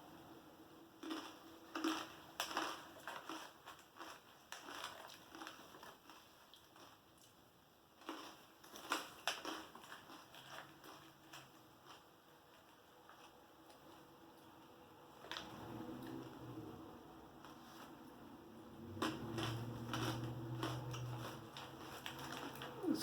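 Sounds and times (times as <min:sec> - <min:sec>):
crunchy snack chewing: 0:01.0 - 0:07.4, 0:08.0 - 0:14.5, 0:18.9 - 0:23.0.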